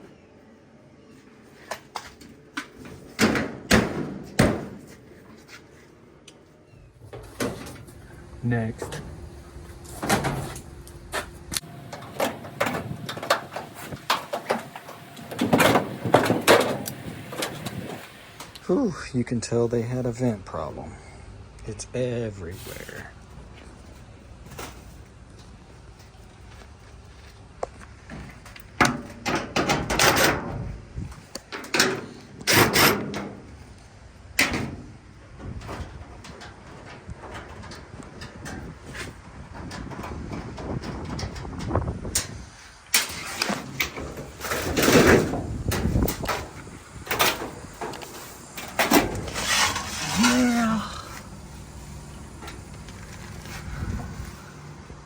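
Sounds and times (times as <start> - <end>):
sheet-metal panels knocking and clanking: 3.2 - 4.9
low hum: 6.8 - 19.1
metal parts clunking and rattling: 7.0 - 18.5, 28.0 - 33.7, 34.4 - 54.1.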